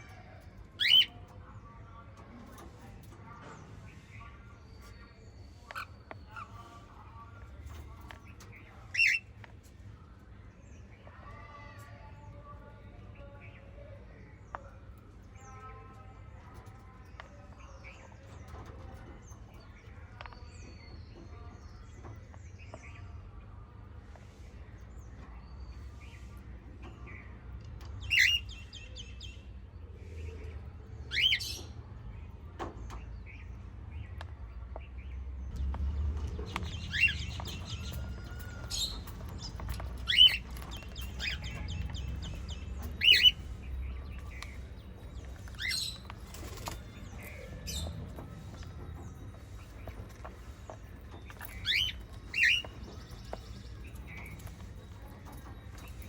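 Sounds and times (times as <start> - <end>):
parrots chirping and trilling: 0.6 - 1.3, 4.9 - 9.4, 28.0 - 28.8, 31.1 - 31.7, 35.5 - 56.0.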